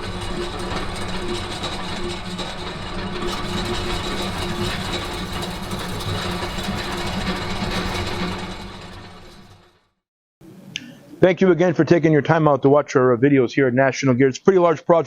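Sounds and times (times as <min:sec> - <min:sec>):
machine whirring and humming: 0:00.0 - 0:09.7.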